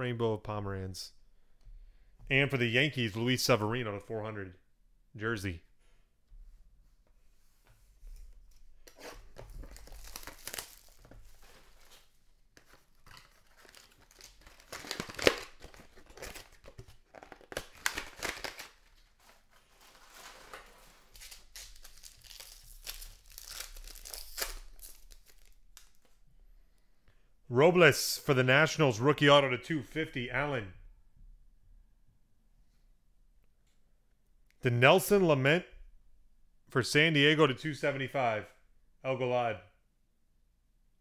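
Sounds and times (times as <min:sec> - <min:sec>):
card packaging tearing and crinkling: 0:08.8 - 0:26.0.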